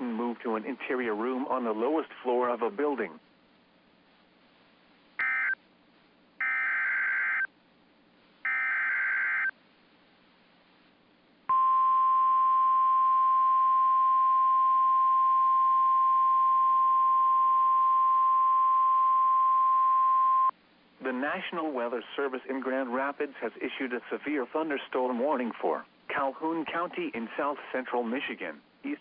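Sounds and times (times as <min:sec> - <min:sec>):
steady warning alarm tone: 0:05.2 - 0:05.6, 0:06.4 - 0:07.5, 0:08.5 - 0:09.5.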